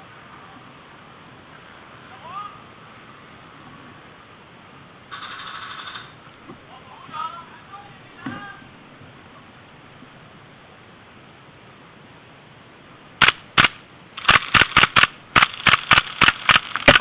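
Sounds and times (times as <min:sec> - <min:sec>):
airsoft gun shots: 0:13.2 - 0:17.0.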